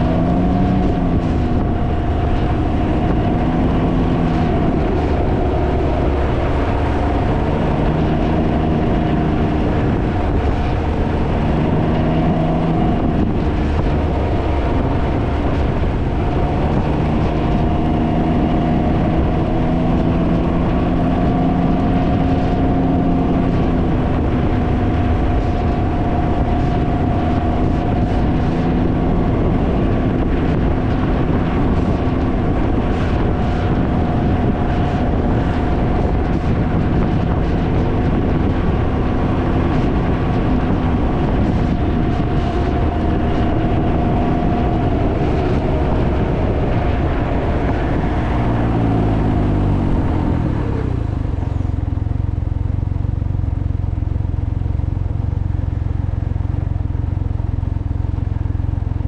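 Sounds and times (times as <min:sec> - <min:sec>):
motorcycle engine running: 0:00.0 - 0:59.0
wind noise on microphone: 0:00.0 - 0:59.0.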